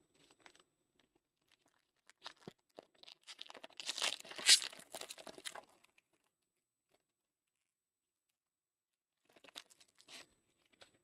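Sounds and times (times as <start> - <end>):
foil wrapper crinkling and tearing: 1.6 - 5.8.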